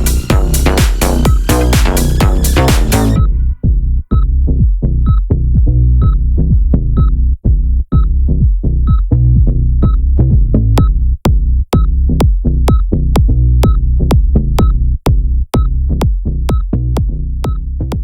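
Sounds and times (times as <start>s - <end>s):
electronic music with drum-machine beat: 0.0s - 3.4s, 8.9s - 18.0s.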